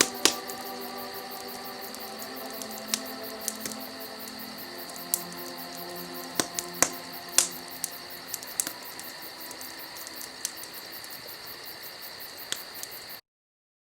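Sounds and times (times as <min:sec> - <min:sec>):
sharp pops and clicks: 0:00.0 - 0:00.8, 0:04.9 - 0:11.2
crickets trilling: 0:00.0 - 0:13.2.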